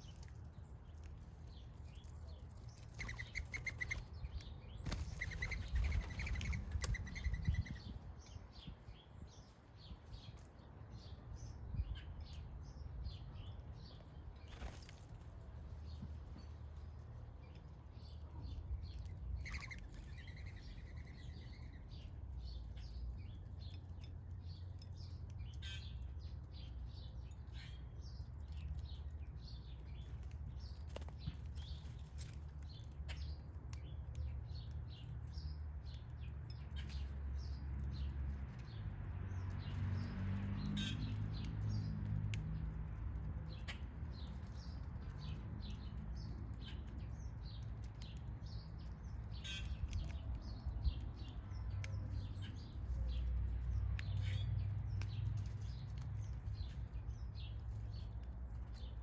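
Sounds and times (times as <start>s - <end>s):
songbirds chirping: 0.0s - 59.0s.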